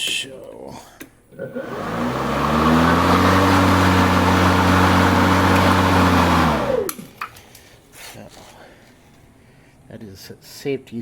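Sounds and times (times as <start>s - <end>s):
electric lawn mower whine: 1.4s - 7.2s.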